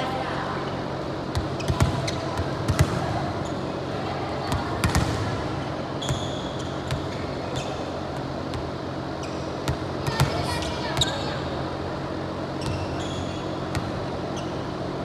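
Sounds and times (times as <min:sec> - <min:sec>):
gym hall noise: 0:00.0 - 0:15.0
volleyball hits: 0:01.4 - 0:03.3, 0:04.5 - 0:06.2
shoe squeak: 0:06.0 - 0:08.0, 0:09.2 - 0:09.7, 0:10.5 - 0:11.4, 0:12.6 - 0:13.7, 0:14.3 - 0:14.7.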